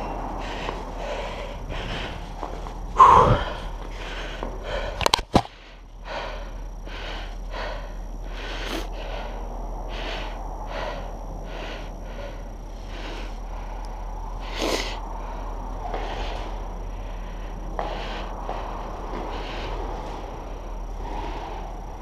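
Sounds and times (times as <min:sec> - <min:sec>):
cyclist breathing hard: 0:00.0 - 0:22.0.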